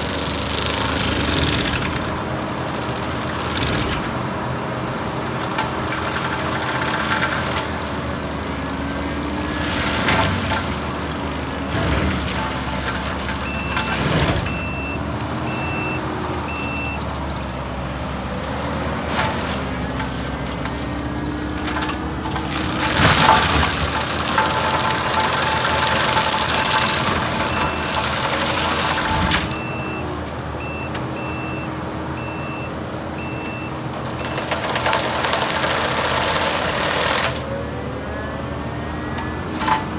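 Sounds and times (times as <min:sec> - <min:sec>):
brush cracking: 0:00.0 - 0:30.5
diesel engine under load: 0:00.0 - 0:39.9
backup alarm beeping: 0:12.4 - 0:17.8, 0:26.6 - 0:34.5.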